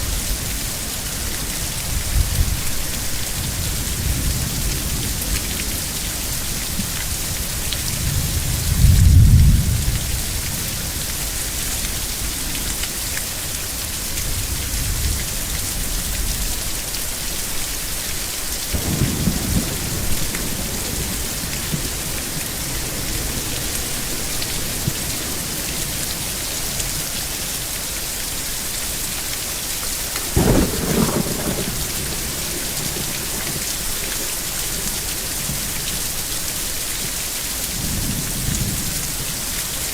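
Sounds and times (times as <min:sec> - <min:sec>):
thunder rumbling: 0:00.0 - 0:11.5, 0:18.7 - 0:27.8, 0:30.0 - 0:36.5
heavy rain hissing: 0:00.0 - 0:39.9.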